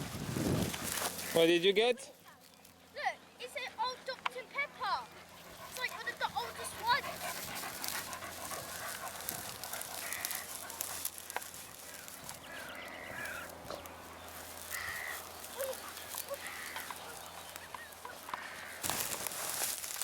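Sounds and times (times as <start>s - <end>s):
crows cawing: 8.6s - 13.8s, 14.4s - 19.2s.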